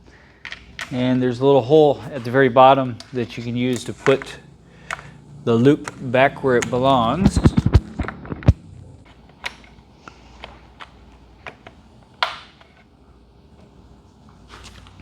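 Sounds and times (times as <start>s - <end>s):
clicks and taps of parts handled: 3.0s - 6.0s.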